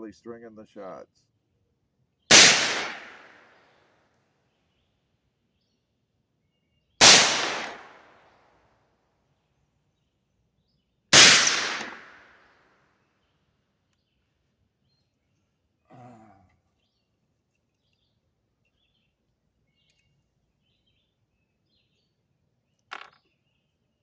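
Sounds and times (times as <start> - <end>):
rifle shots ringing out: 2.3 - 3.6, 7.0 - 8.3, 11.1 - 12.5.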